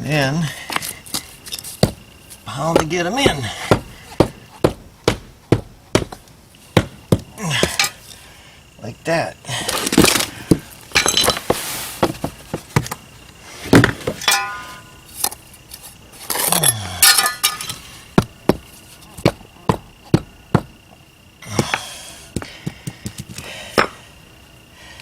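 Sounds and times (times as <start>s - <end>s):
rubber mallet knocking pavers: 1.8s - 2.0s, 2.7s - 8.0s, 18.2s - 20.8s, 21.4s - 24.0s.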